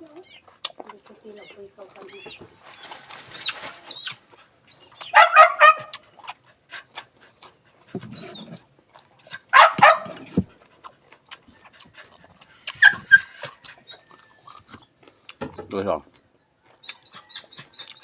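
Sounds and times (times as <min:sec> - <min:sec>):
dog barking: 0:05.1 - 0:06.0, 0:09.5 - 0:10.4.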